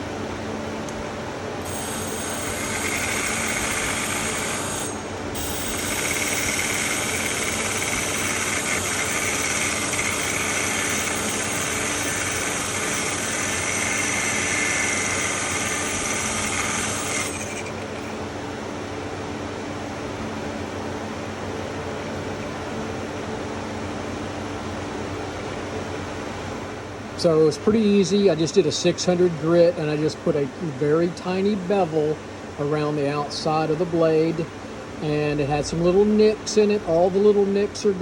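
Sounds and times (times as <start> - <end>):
steady hum: 0.0 - 38.0
steel blade grinding on hone: 1.6 - 18.0.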